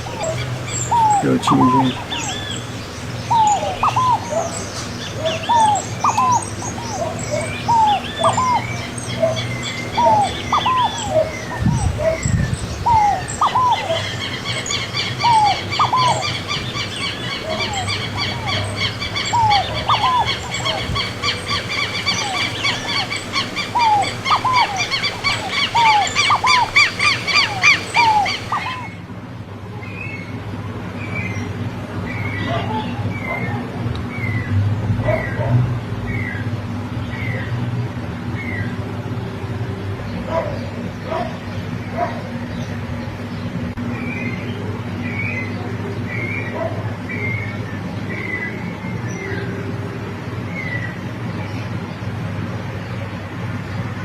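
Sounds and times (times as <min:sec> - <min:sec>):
high-pitched bird twittering: 0:00.0 - 0:29.0.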